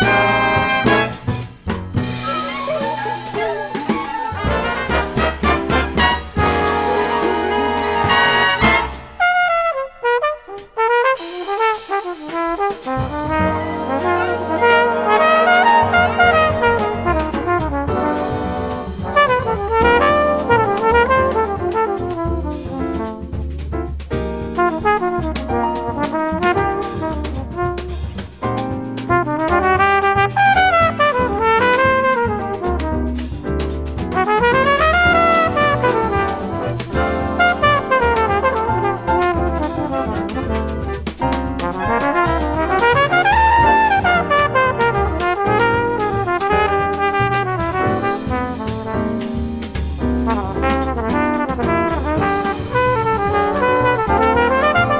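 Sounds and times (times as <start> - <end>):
jazz big band music: 0.0 - 54.9.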